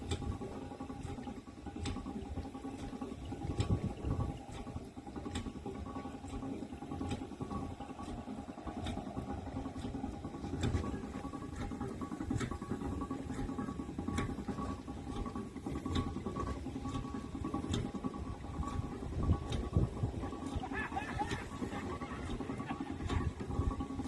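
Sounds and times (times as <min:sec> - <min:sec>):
steam engine rumble: 0:00.0 - 0:24.0
sharp regular ticking: 0:00.1 - 0:24.0.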